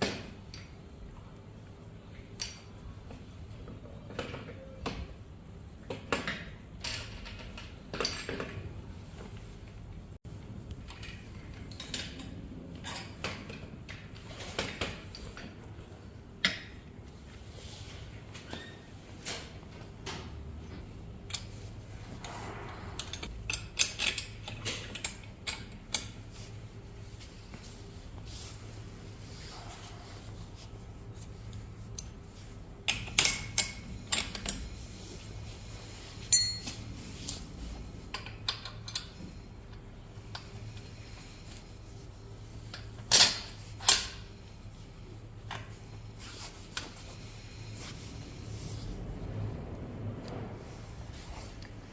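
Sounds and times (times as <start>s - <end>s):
metal tools clinking: 36.3s - 36.9s.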